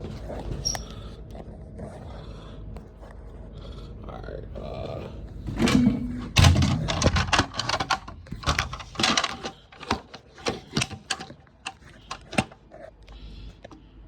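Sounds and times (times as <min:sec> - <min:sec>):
handling clicks and rustles: 0:05.5 - 0:13.9.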